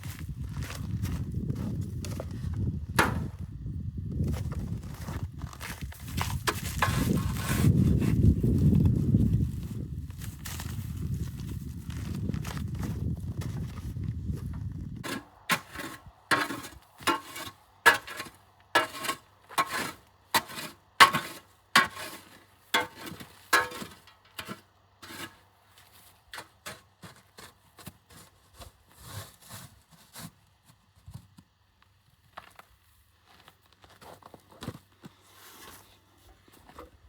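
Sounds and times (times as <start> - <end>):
hard tool scraping and knocking: 15.0 - 25.4.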